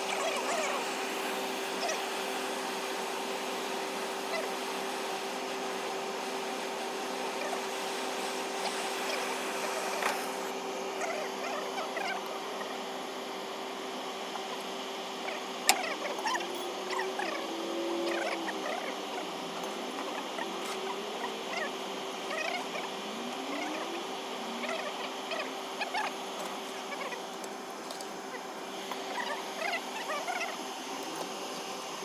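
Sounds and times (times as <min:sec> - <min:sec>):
machine humming with high whine: 0:00.0 - 0:32.0.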